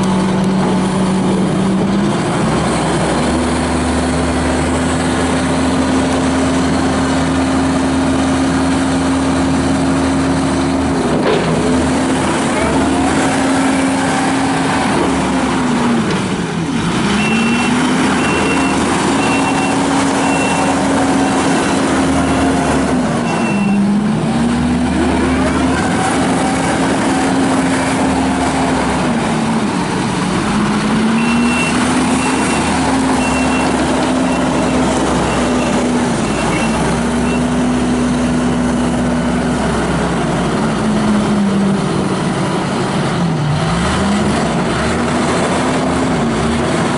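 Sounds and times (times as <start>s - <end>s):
track loader diesel engine: 0.0s - 46.9s
backup alarm beeping: 17.2s - 20.8s, 31.2s - 37.5s.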